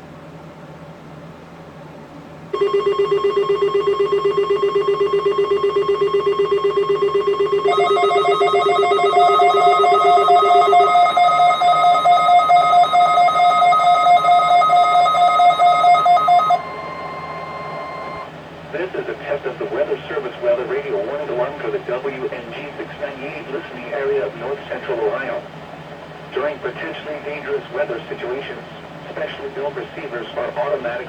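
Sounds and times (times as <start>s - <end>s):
pulsing two-tone electronic alarm: 2.6s - 18.3s
warning alarm tone: 2.6s - 18.3s
faint radio hiss: 16.8s - 31.0s.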